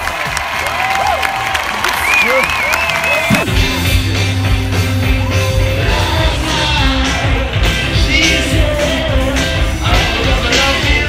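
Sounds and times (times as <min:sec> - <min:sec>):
rock music with singing: 0:03.2 - 0:11.0.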